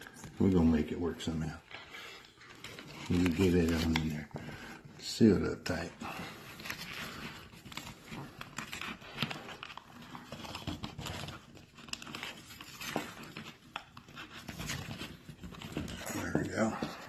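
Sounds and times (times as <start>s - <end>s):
tape crinkling and rustling: 0.0s - 17.0s
cardboard tube being handled: 2.6s - 17.0s.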